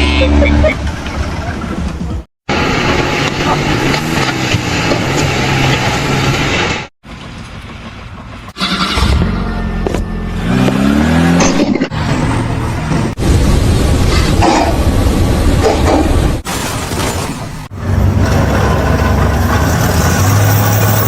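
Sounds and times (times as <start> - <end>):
engine revving: 8.5 - 13.2.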